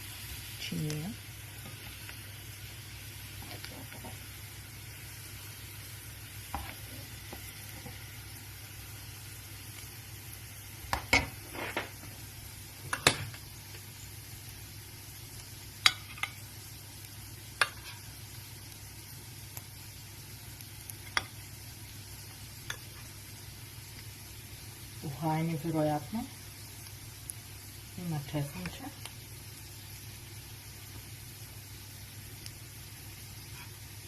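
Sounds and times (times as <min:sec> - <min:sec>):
potatoes sizzling faintly: 0:00.0 - 0:34.0.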